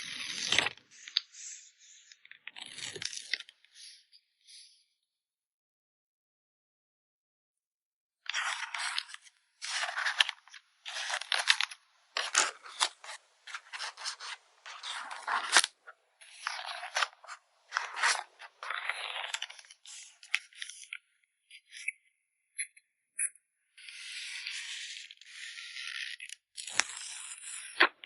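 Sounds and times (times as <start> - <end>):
packing materials rustling: 8.3 - 20.0.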